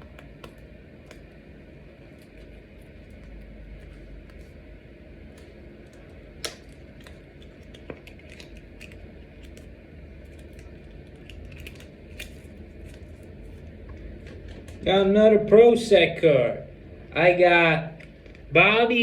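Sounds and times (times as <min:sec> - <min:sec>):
hands handling card packaging: 0:00.0 - 0:01.3, 0:02.0 - 0:04.6, 0:05.3 - 0:14.8.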